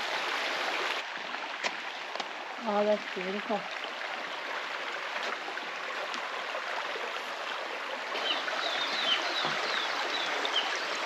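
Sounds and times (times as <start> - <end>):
creek running over rocks: 0.0 - 11.0
bird chirping: 8.2 - 10.9.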